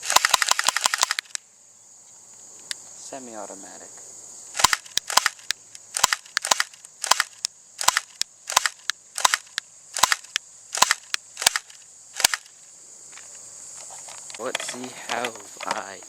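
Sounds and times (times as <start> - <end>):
airsoft pistol shots: 4.6 - 12.5.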